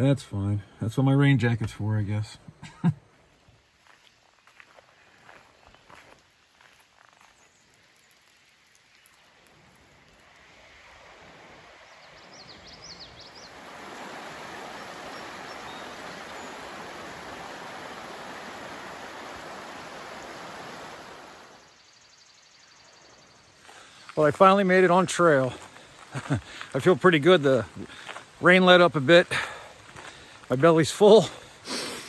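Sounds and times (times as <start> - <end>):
rushing water: 7.8 - 21.7.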